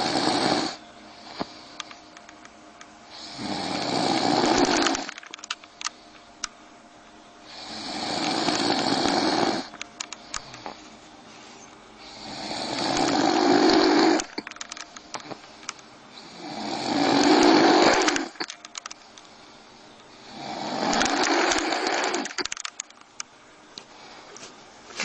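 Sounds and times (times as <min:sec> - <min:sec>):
man snoring loudly: 0:00.0 - 0:00.8, 0:03.1 - 0:05.1, 0:07.5 - 0:09.7, 0:12.1 - 0:14.3, 0:16.2 - 0:18.4, 0:20.2 - 0:22.4.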